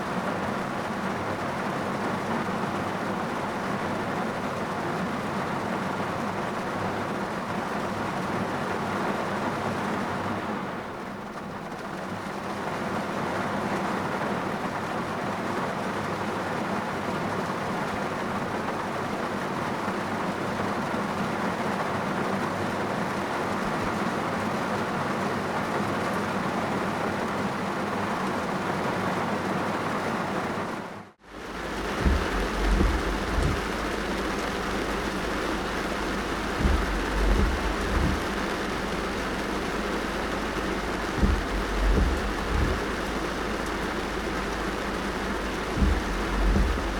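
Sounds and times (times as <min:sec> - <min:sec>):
rain drumming on car roof: 0:00.0 - 0:46.9
heavy low thumps: 0:31.3 - 0:46.9.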